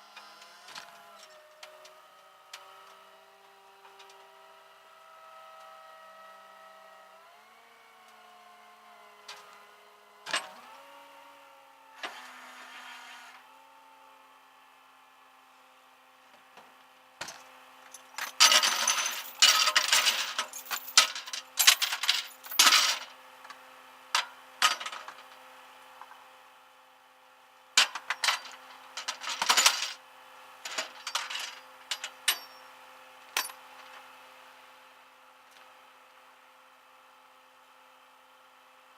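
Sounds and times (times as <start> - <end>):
metal clinking and rattling: 18.1 - 23.1, 27.8 - 30.0, 30.7 - 32.6.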